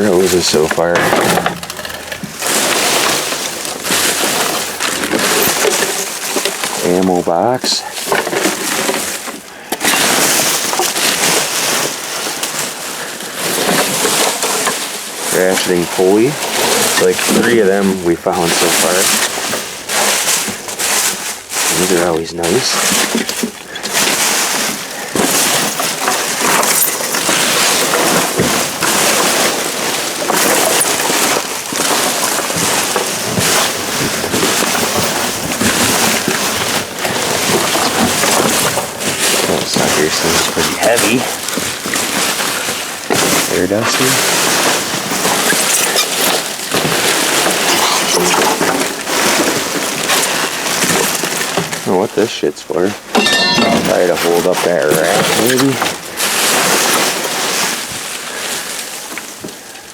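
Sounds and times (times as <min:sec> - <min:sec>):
knocks and clatters in dumpster: 0:00.0 - 0:06.8, 0:53.0 - 0:57.8
trash rummaged in a dumpster: 0:00.0 - 0:59.9.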